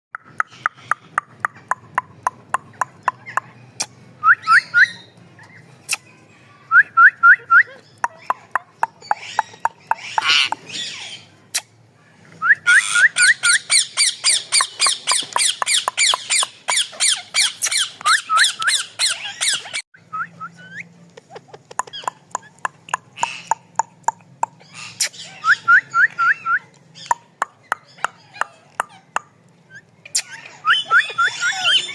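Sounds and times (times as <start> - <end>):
parrot chirping and squawking: 0.3 - 6.0, 7.7 - 11.7, 12.7 - 19.9, 20.6 - 25.7, 26.9 - 31.9
parrot fast chatter: 8.0 - 11.2, 12.8 - 19.8, 21.3 - 25.3.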